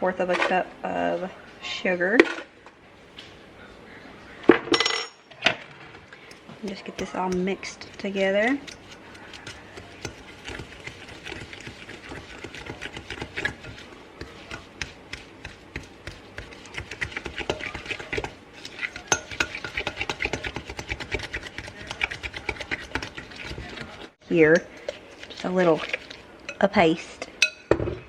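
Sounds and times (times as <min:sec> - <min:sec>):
fork scraping and clinking bowl: 0:06.2 - 0:27.6.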